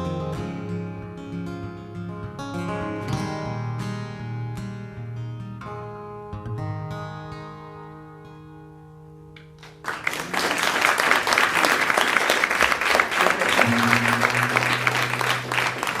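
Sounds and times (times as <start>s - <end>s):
audience applause: 9.6s - 16.0s
acoustic guitar chord ringing: 13.1s - 16.0s.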